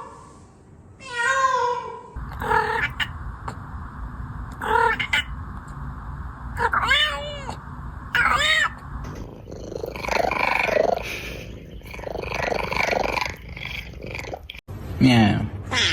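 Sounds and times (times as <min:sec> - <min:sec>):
cat meowing: 0:04.6 - 0:05.3, 0:06.6 - 0:07.6.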